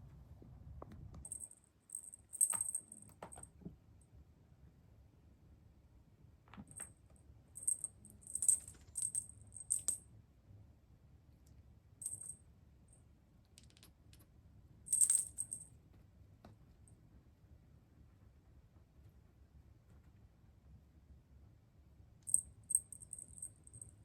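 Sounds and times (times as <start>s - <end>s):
small bell jingling: 1.3s - 3.2s, 7.6s - 10.0s, 12.0s - 12.4s, 14.9s - 15.7s, 22.3s - 24.0s.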